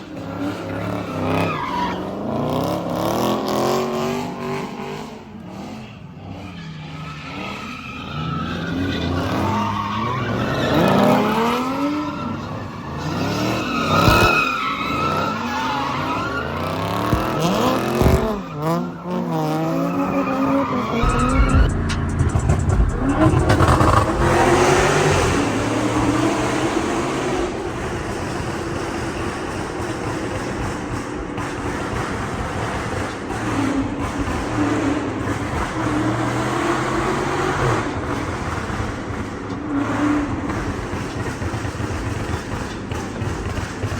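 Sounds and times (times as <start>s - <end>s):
car engine exhaust revving: 20.7s - 28.6s.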